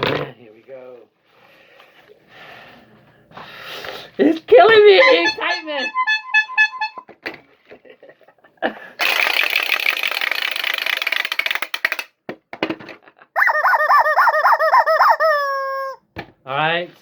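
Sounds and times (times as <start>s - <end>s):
loud warbling tone: 4.6s - 7.0s, 13.4s - 16.0s.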